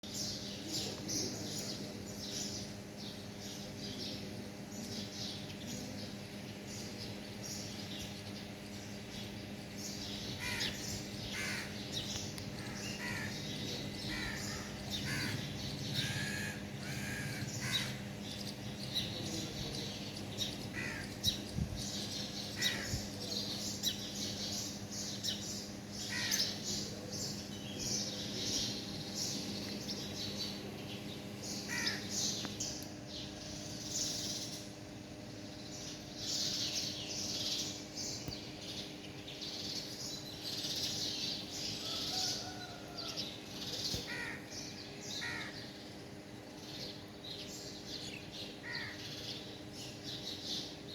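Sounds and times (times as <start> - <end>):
birds chirping: 0.0 - 50.9
steady low hum: 0.0 - 50.9
lower bird calls: 7.6 - 34.8, 35.7 - 46.0, 48.0 - 50.8.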